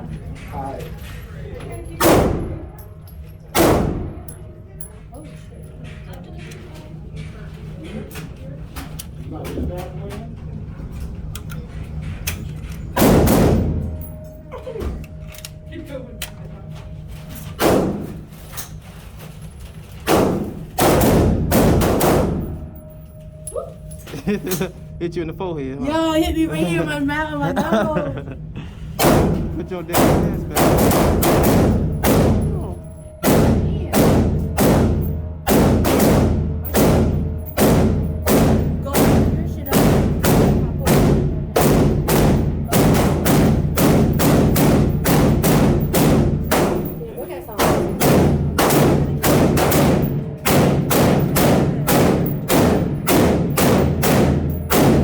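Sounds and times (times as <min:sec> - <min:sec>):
gunshots echoing indoors: 0:00.1 - 0:04.5, 0:12.2 - 0:24.9, 0:28.9 - 0:55.0.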